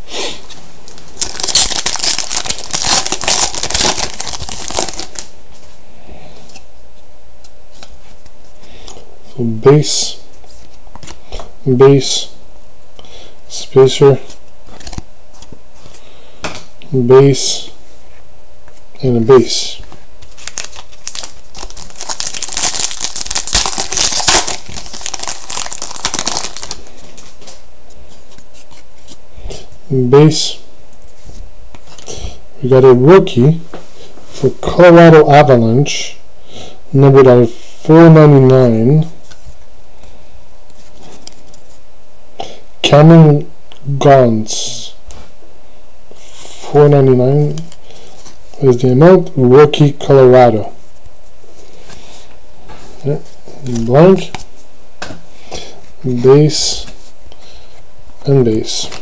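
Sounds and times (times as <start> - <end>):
wrapper crinkling and tearing: 0.9 - 5.3, 20.2 - 27.6.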